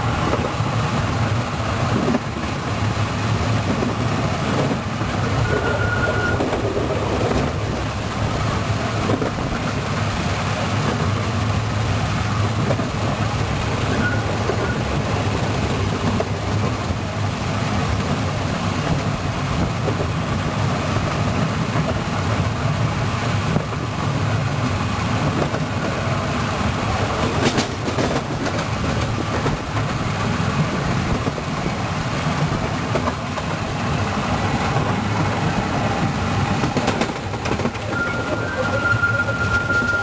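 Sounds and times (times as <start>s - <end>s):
train wheels rumbling and rattling: 0.0s - 40.0s.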